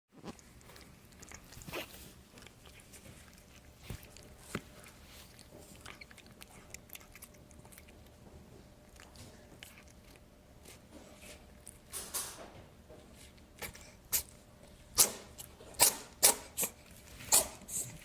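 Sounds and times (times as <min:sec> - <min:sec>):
cat sneezing: 0:15.0 - 0:18.0.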